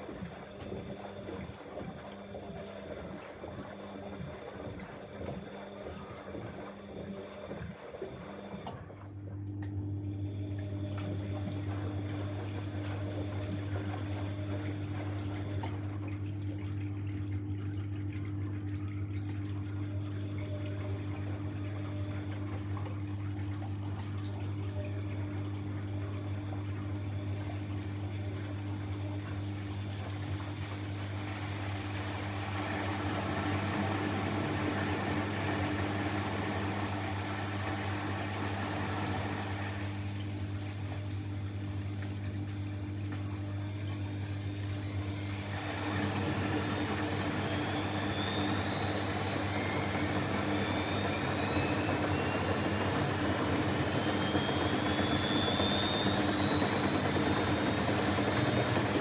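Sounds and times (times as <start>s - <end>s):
washing machine humming: 0.0s - 59.0s
motor whine rising in pitch: 43.6s - 59.0s.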